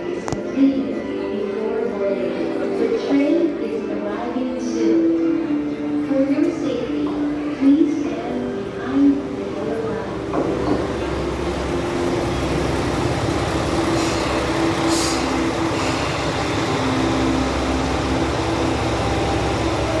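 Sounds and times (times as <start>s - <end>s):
train rumbling: 8.3s - 20.0s.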